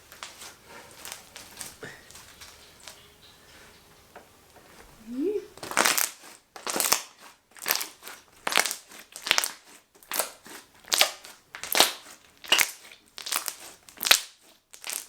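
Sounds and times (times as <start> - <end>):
slime squishing wetly: 5.1 - 15.0.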